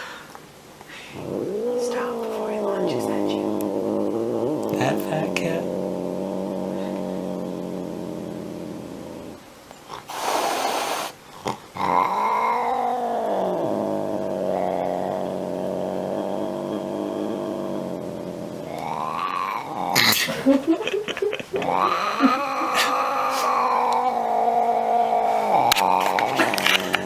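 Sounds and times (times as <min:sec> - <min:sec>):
cat hissing: 0:00.9 - 0:20.5, 0:21.4 - 0:27.0
cat growling: 0:01.0 - 0:27.0
cat yowling: 0:21.6 - 0:26.8.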